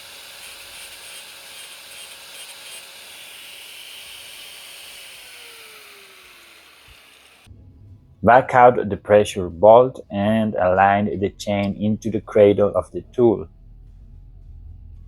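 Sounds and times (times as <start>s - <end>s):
angle grinder grinding steel: 0.0s - 7.5s.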